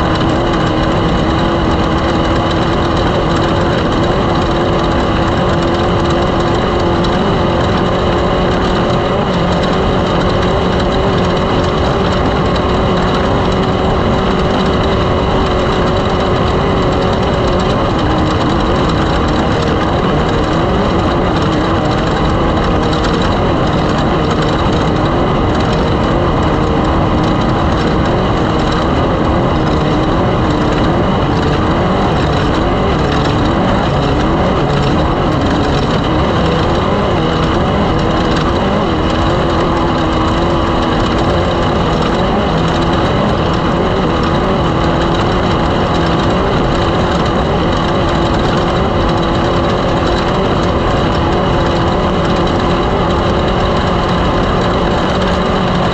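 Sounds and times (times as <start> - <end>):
race car engine running: 0.0 - 55.9.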